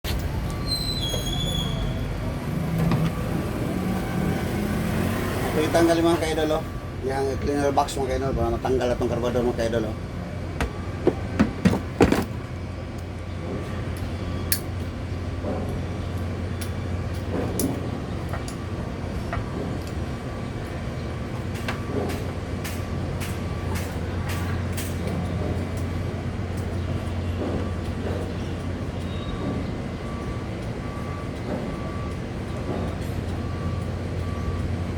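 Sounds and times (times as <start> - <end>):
sharp knocks: 10.6 - 12.3.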